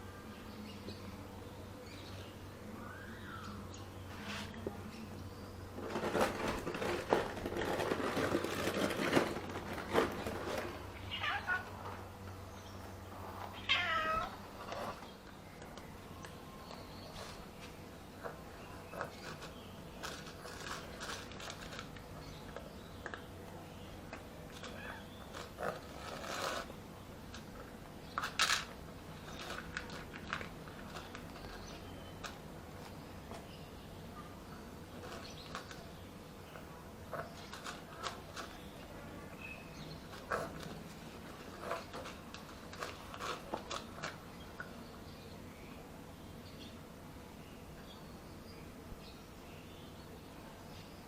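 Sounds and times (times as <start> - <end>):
rustling and clicking: 5.7 - 12.4, 13.2 - 23.3, 24.1 - 33.6, 34.9 - 44.8
cat meowing: 11.0 - 11.8, 13.5 - 14.4
cat eating with crunching: 13.0 - 33.5, 34.3 - 44.8.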